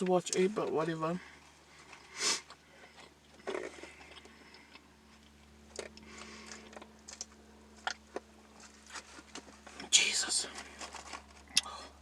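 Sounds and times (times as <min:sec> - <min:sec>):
person chewing food: 0:01.5 - 0:09.6.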